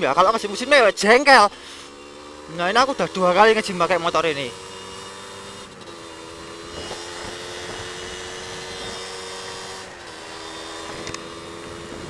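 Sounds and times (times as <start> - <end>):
two-stroke engine running: 0.0 - 12.0
rushing wind: 4.8 - 12.0.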